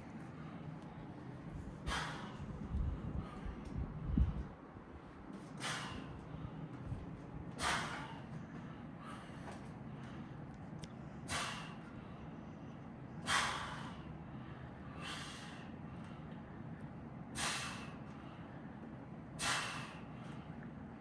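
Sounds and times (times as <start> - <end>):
man exhaling forcefully: 1.8 - 3.5, 5.6 - 6.4, 7.5 - 8.3, 11.2 - 11.9, 13.2 - 14.1, 15.0 - 15.7, 17.4 - 18.0, 19.4 - 20.2.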